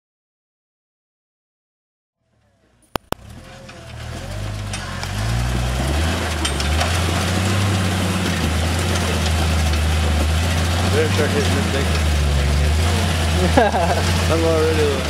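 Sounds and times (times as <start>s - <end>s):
car engine running at low revs: 2.6s - 15.0s
sharp clicks: 3.0s - 3.2s.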